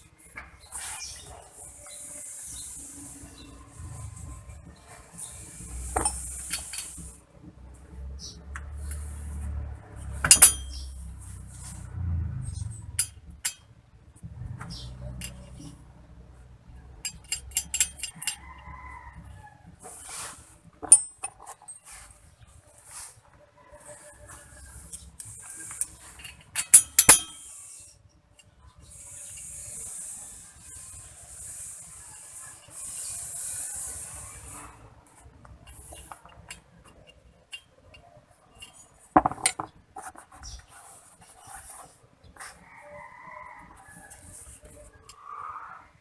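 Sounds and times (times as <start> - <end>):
metal tools clinking: 5.8 - 7.2, 10.2 - 11.0, 12.9 - 13.7, 17.0 - 18.5, 20.8 - 21.9, 25.6 - 27.9, 35.6 - 39.7
steady hiss: 28.9 - 34.8.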